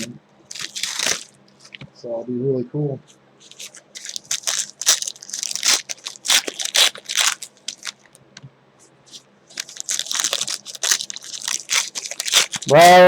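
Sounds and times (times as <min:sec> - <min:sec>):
card pack wrappers crinkling: 0:00.0 - 0:01.8, 0:03.4 - 0:08.2, 0:09.5 - 0:13.0.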